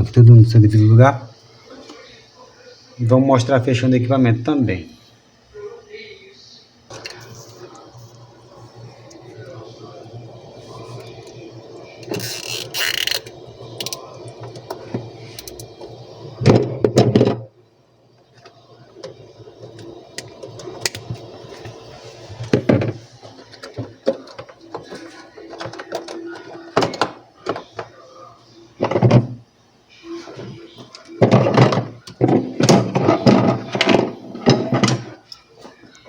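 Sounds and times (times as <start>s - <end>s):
refrigerator parts clunking and rattling: 28.8s - 29.4s, 31.2s - 35.2s.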